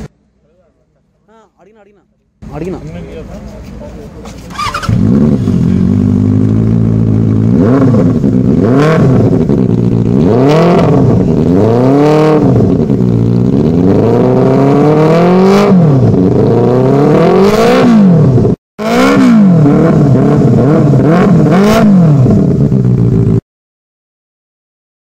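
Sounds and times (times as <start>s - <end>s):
motorcycle engine revving: 4.4s - 23.4s.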